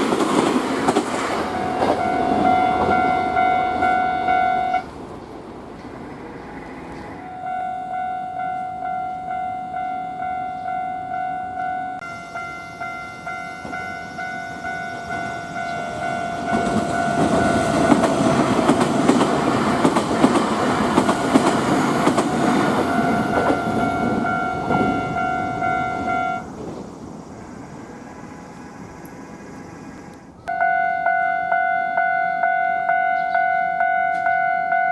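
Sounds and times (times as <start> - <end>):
electric train passing: 0.0 - 34.9
level crossing bell ringing: 1.4 - 4.9, 7.2 - 19.1, 22.3 - 26.4, 30.5 - 34.9
wheels clattering over rail joints: 13.3 - 26.9.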